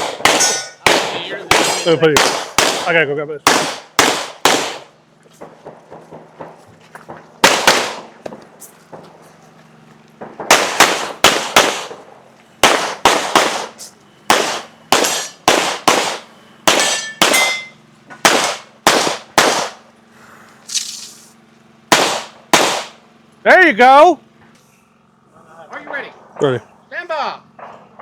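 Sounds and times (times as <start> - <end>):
rapid gunfire: 0.0 - 6.5, 7.4 - 8.1, 10.2 - 12.0, 12.6 - 17.5, 18.2 - 19.8, 21.9 - 23.0.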